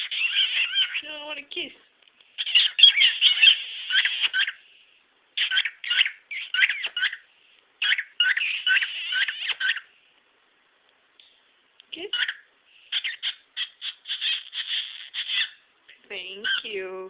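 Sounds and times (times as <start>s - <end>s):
cockatiel chattering and whistling: 0.0s - 1.0s, 2.4s - 4.6s, 5.4s - 7.2s, 7.8s - 9.9s, 12.2s - 15.6s.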